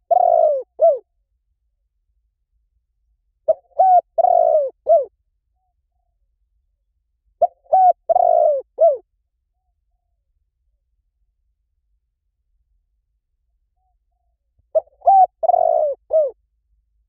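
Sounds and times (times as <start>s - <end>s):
dove cooing: 0.0s - 1.0s, 3.5s - 5.1s, 7.4s - 9.0s, 14.8s - 16.4s.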